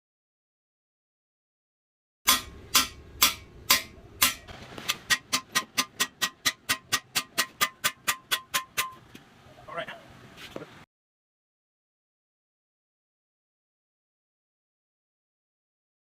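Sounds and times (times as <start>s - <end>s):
hammer striking steel with clang: 2.3s - 9.0s.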